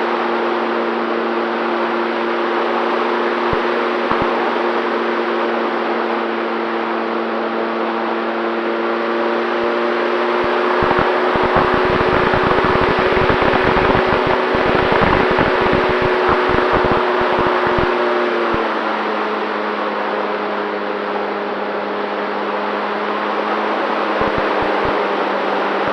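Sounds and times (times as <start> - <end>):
electric motor and propeller hum: 3.5 - 4.4, 10.4 - 18.0, 24.2 - 25.0
rush of air: 10.8 - 18.0
wind buffeting microphone: 10.8 - 18.0.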